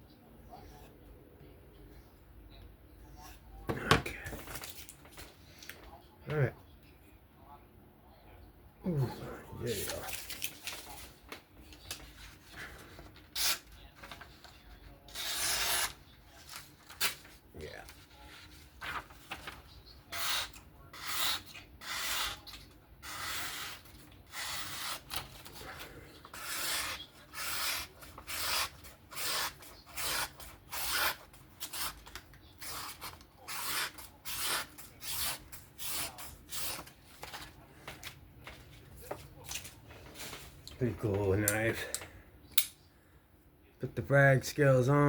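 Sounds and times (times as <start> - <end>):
knife rasping on sharpener: 26.3 - 31.9.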